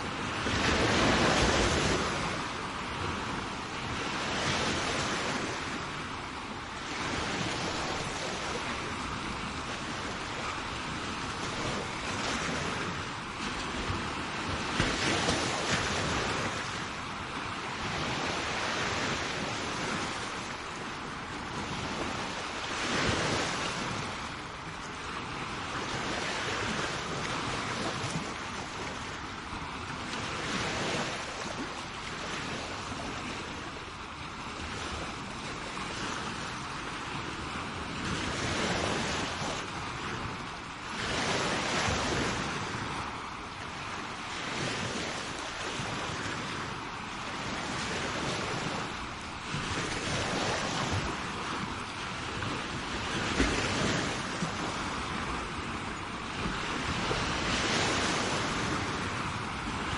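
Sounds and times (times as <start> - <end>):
sea waves breaking on shore: 0.0 - 59.9
wind on microphone: 0.0 - 59.9.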